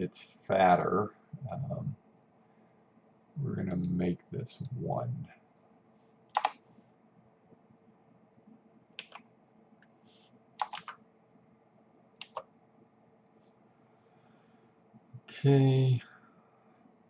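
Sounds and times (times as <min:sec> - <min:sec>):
computer keyboard keystrokes: 0:06.4 - 0:06.6, 0:09.0 - 0:09.2, 0:10.6 - 0:11.0, 0:12.2 - 0:12.5.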